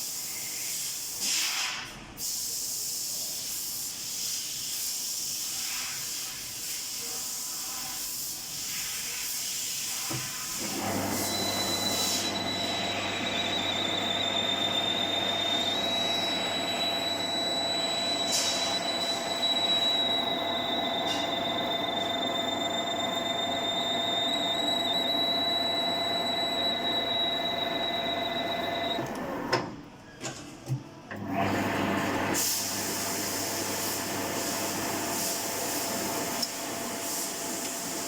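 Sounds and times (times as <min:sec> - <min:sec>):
metal lathe running: 0:10.6 - 0:29.5.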